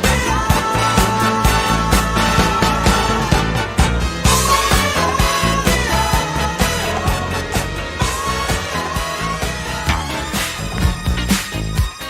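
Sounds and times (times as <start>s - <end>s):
dance music with steady beat: 9.8s - 12.0s.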